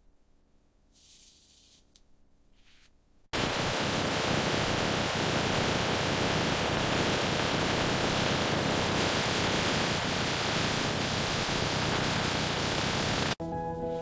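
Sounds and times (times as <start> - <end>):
faint hiss: 0.9 - 2.0.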